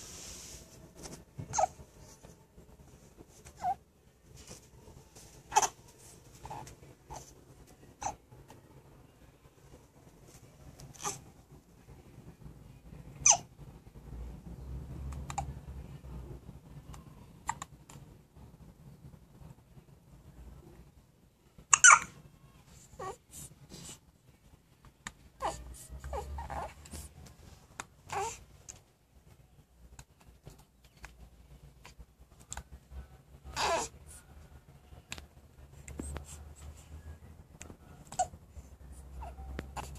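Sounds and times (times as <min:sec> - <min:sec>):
low steady hum: 0:00.0 - 0:39.9
baby hiccupping: 0:05.5 - 0:05.8, 0:21.7 - 0:22.1
baby vocal sound: 0:05.5 - 0:05.8, 0:28.1 - 0:28.4, 0:33.5 - 0:34.0.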